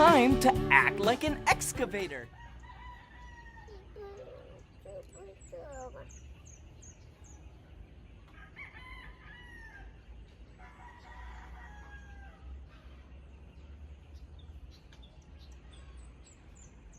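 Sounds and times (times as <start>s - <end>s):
bird calls: 2.4s - 11.5s.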